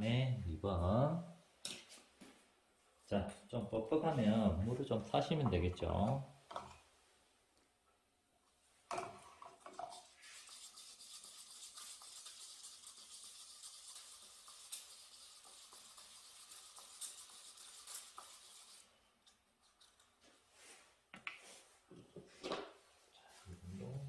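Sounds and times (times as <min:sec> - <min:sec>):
paintbrush brushing: 0:09.6 - 0:19.0.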